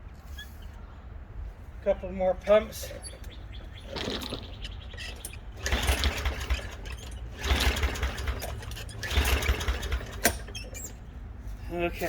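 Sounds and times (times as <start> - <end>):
lawnmower engine cranking: 3.9 - 11.0
recoil starter pulls: 3.9 - 11.0.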